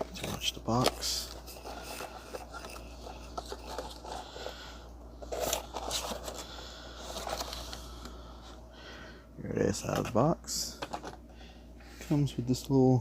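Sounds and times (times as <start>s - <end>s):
cardboard and plastic rustling: 0.0s - 8.6s, 9.8s - 11.3s.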